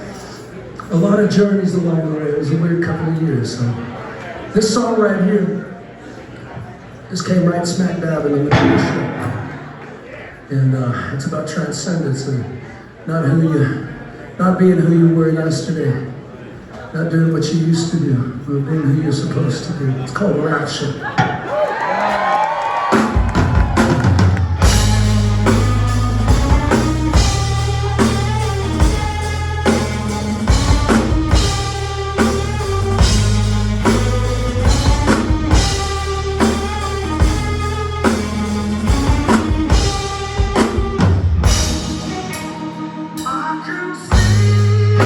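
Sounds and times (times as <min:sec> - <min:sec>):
drum kit beat: 0:08.5 - 0:09.8, 0:22.9 - 0:43.5, 0:44.1 - 0:45.0
live rock band playing: 0:08.5 - 0:10.0, 0:22.9 - 0:45.0.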